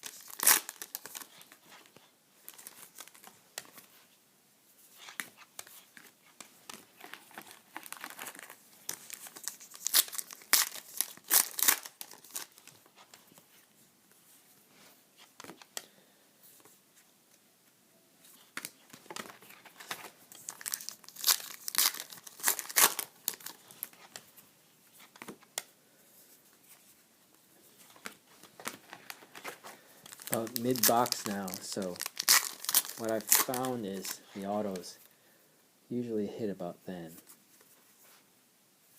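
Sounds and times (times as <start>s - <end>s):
card pack wrappers tearing and crinkling: 0.0s - 3.8s, 6.7s - 12.8s, 18.6s - 24.0s, 28.5s - 35.0s.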